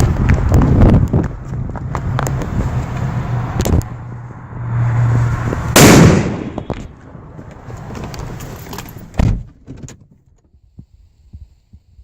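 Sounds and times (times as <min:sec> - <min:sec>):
firecracker bang: 0:05.7 - 0:06.8.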